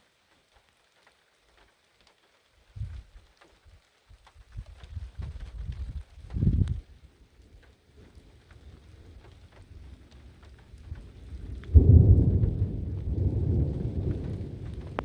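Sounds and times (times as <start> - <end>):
light rain ticking: 0.0 - 15.0
thunder rumbling: 8.3 - 15.0.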